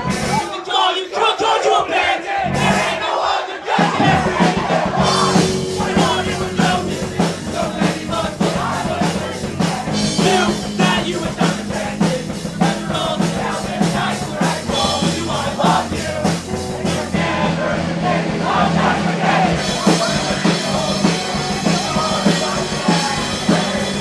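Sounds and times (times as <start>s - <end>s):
bass guitar: 0.0s - 0.4s, 2.4s - 3.0s, 3.8s - 24.0s
drum kit beat: 0.0s - 0.6s, 2.0s - 24.0s
person singing: 4.0s - 18.6s, 19.5s - 24.0s
electric guitars: 4.1s - 24.0s.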